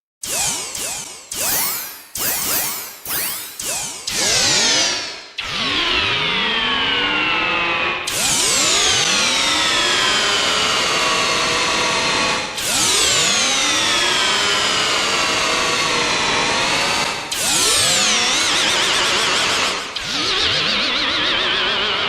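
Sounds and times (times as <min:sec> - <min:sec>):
sci-fi electronic hum with sliding tones: 0:00.3 - 0:04.0.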